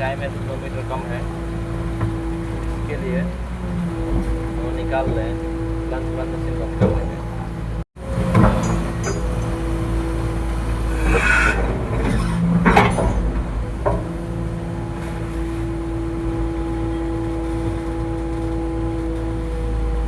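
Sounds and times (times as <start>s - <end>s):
excavator diesel engine running: 0.0s - 20.0s
machine clunk: 8.2s - 9.8s, 10.8s - 14.4s.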